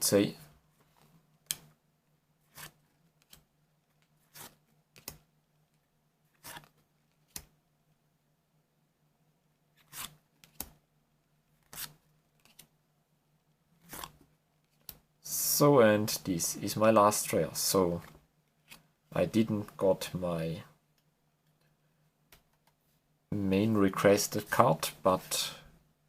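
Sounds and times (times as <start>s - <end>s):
faint steady hum: 0.0s - 26.0s
cards flicking and rustling: 0.8s - 1.8s, 2.5s - 5.3s, 6.3s - 7.6s, 9.7s - 10.8s, 11.6s - 12.8s, 13.8s - 15.0s.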